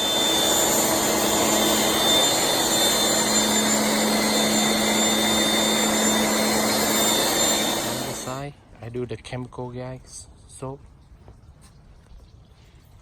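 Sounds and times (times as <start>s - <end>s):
pressure washer pump whining: 0.0s - 8.6s.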